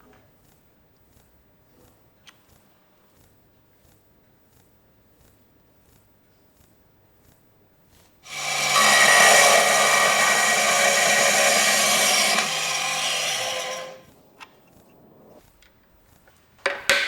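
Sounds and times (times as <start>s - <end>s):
power tool running and winding down: 8.3s - 14.0s.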